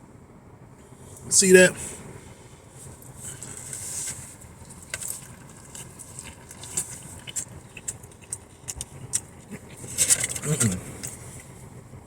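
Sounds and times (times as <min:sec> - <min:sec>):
steady low hum: 0:00.0 - 0:12.0
clicks and crackles of eating: 0:03.0 - 0:11.6.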